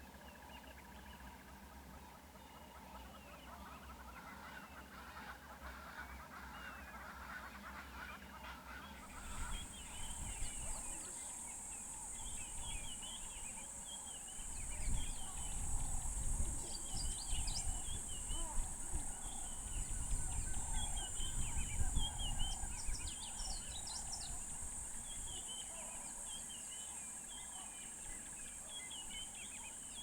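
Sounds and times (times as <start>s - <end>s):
birds chirping: 9.0s - 26.5s.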